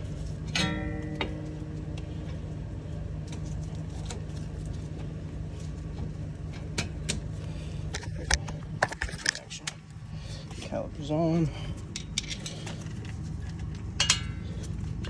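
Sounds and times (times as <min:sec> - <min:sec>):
steady low hum: 0:00.0 - 0:15.0
light metal clicks and knocks: 0:11.8 - 0:15.0.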